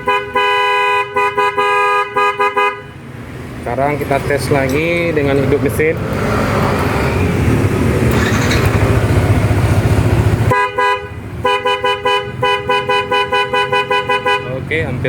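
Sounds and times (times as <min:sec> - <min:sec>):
scooter engine running: 0:07.2 - 0:10.5.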